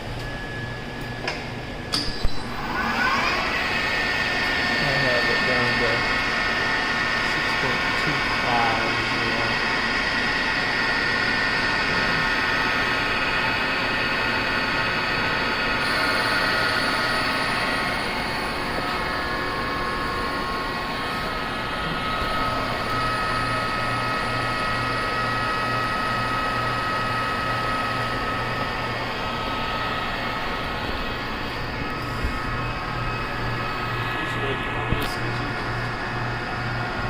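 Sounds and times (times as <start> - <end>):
whining tones: 0.0 - 37.0
machine tool whirring: 1.9 - 37.0
low pulsing hum: 27.2 - 37.0.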